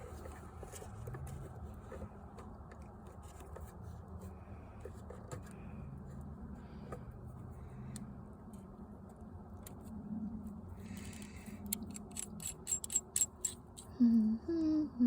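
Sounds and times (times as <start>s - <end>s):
hands clicking and scraping parts: 0.0s - 7.2s, 10.8s - 13.9s
low steady hum: 0.0s - 15.0s.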